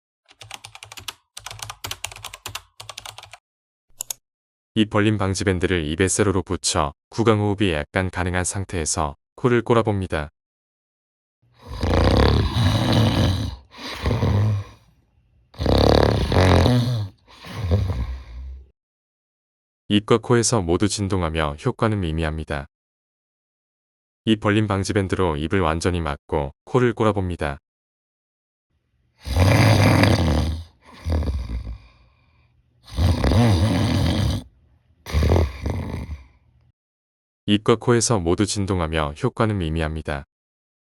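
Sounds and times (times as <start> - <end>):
person snoring: 11.6 - 14.9, 15.6 - 18.7, 29.2 - 34.5, 35.1 - 36.4.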